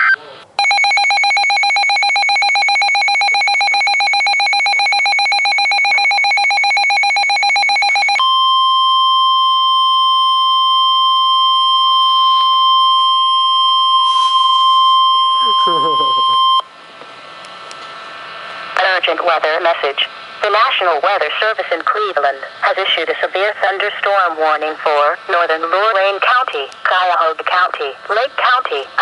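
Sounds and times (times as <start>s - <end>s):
steady warning alarm tone: 0.0s - 16.8s
fast-pulsing electronic alarm tone: 0.6s - 16.7s.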